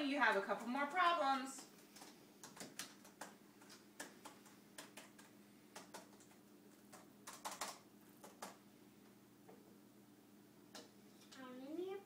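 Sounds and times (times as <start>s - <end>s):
computer keys clicking: 1.6s - 8.6s.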